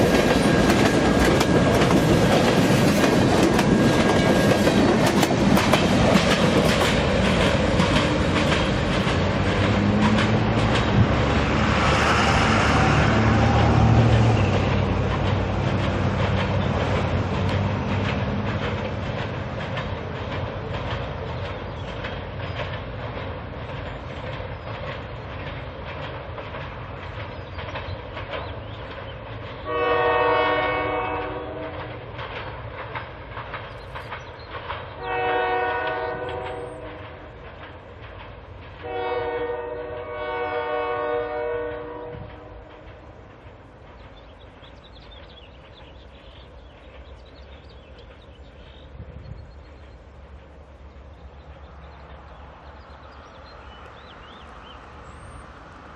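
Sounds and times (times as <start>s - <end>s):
train wheels clicking on track: 0.0s - 55.9s
locomotive horn blasts: 29.7s - 31.8s, 35.0s - 37.0s, 38.8s - 42.6s.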